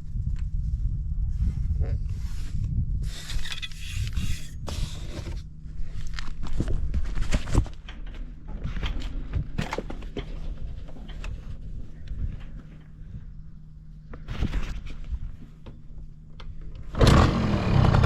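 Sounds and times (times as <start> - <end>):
clicks and scrapes: 3.0 - 5.5.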